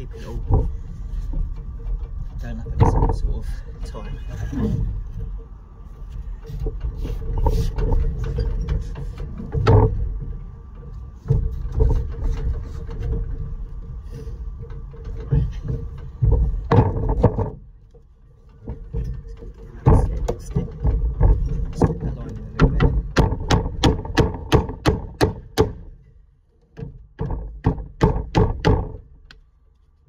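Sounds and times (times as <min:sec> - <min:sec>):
steady hum: 0:00.0 - 0:30.0
knocks on metal: 0:16.2 - 0:17.6, 0:19.8 - 0:25.9, 0:26.8 - 0:29.1.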